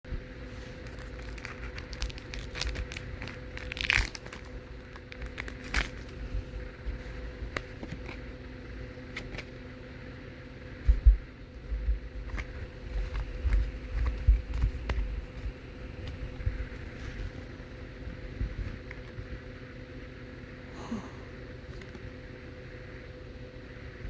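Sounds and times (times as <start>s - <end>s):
faint steady hum: 0.0s - 24.0s
foil wrapper crinkling and tearing: 0.7s - 6.2s.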